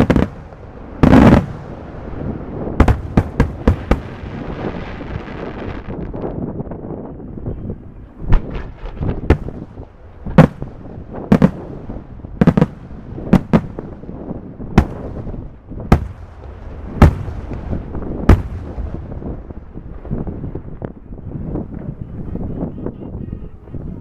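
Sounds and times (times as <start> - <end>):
fireworks bursting: 0.0 - 6.3, 7.8 - 20.7
steady low rumble: 0.0 - 24.0.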